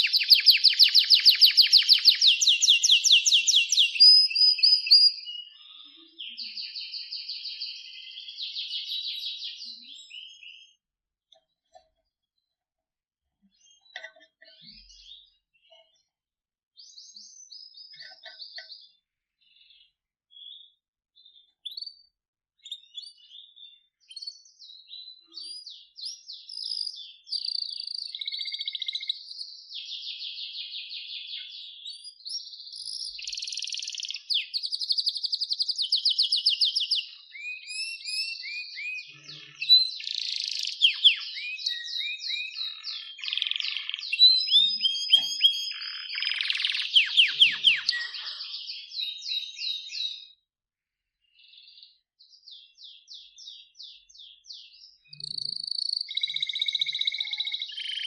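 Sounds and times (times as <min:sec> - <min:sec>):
canary singing trills: 0:00.0 - 0:12.0, 0:16.8 - 0:50.4, 0:51.2 - 0:58.0.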